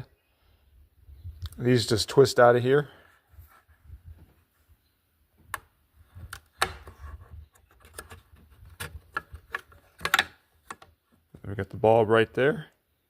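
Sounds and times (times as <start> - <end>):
plastic clicks and knocks: 5.4 - 7.0, 7.6 - 11.4.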